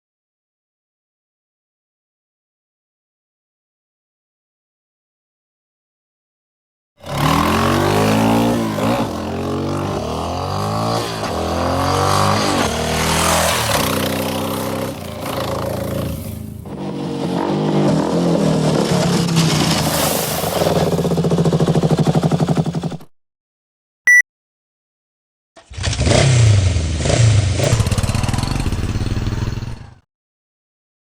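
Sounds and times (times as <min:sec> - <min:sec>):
motorcycle engine accelerating: 0:07.0 - 0:19.5, 0:20.8 - 0:23.0, 0:25.7 - 0:30.0.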